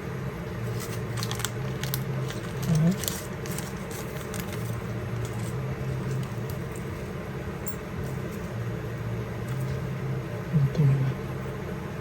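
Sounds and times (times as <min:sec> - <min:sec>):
low machine hum: 0:00.0 - 0:12.0.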